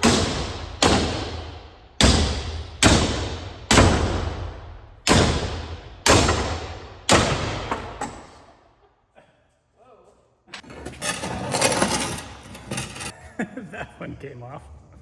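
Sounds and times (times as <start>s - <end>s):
hammer striking metal: 0.0s - 8.3s.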